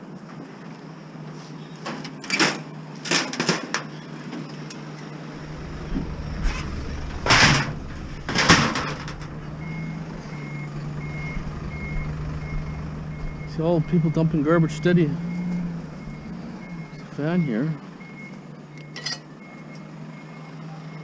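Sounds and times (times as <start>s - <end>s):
vehicle engine rumble: 0.0s - 21.0s
reversing alarm beeping: 5.4s - 21.0s
sharp knocks and thumps: 5.6s - 9.8s.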